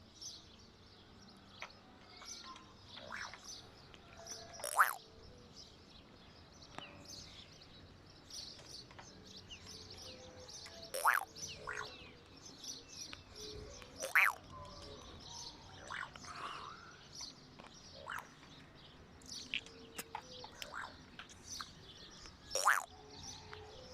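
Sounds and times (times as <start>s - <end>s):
faint high bird chirps: 4.1s - 5.0s, 9.5s - 17.4s, 21.6s - 23.9s
bird chirps and whistled calls: 4.6s - 5.0s, 10.9s - 11.9s, 14.0s - 14.4s, 22.5s - 22.9s.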